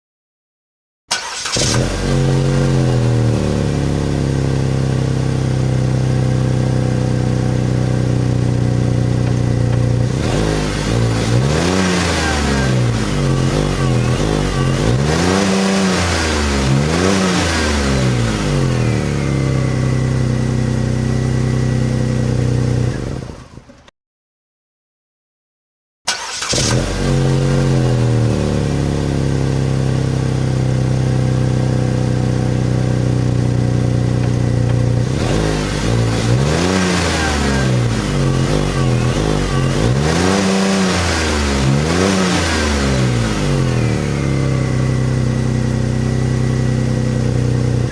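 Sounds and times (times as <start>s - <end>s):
car engine starting and revving: 1.1s - 23.9s, 26.1s - 47.9s.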